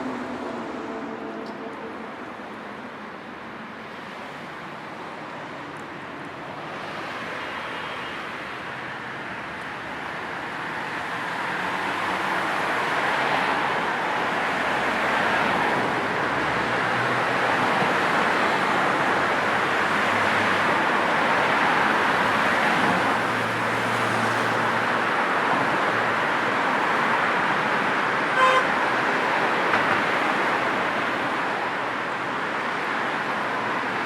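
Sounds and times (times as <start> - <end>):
cars passing: 0.0 - 34.0.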